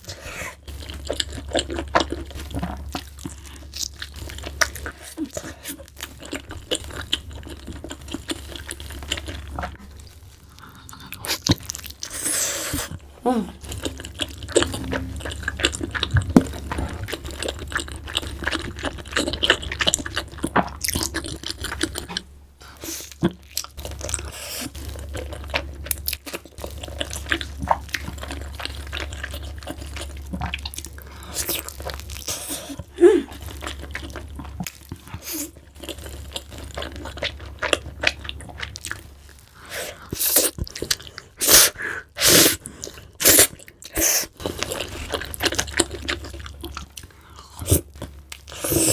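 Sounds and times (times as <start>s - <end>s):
steady low hum: 0.0s - 22.8s
chewing and crunching food: 0.0s - 48.9s.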